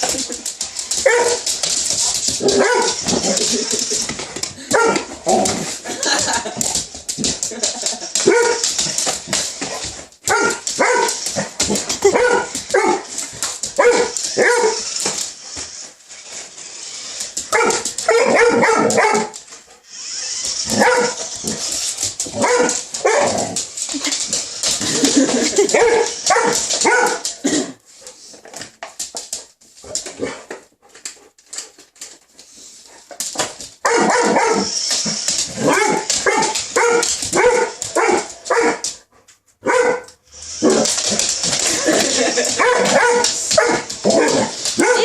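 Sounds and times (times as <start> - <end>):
dog barking: 1.0 - 1.4, 2.5 - 3.0, 4.7 - 5.1, 10.3 - 11.2, 12.1 - 13.0, 13.8 - 14.8, 17.5 - 19.4, 20.7 - 21.2, 22.4 - 23.4, 25.8 - 27.2, 33.8 - 34.7, 35.6 - 38.8, 39.6 - 40.1, 42.6 - 45.0.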